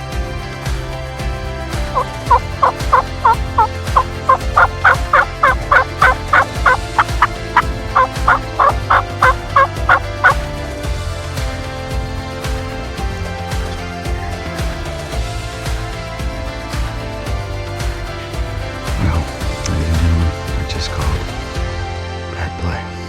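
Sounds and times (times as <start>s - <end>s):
turkey yelping: 2.0s - 10.5s.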